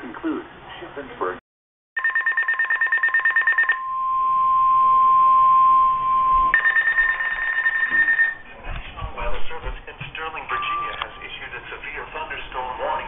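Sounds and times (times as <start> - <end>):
steady warning alarm tone: 2.0 - 8.5.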